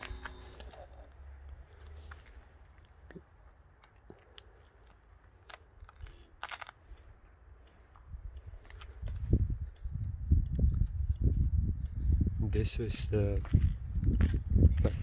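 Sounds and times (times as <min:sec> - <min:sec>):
camera handling clicks and rustles: 0:00.0 - 0:01.2, 0:01.8 - 0:11.6.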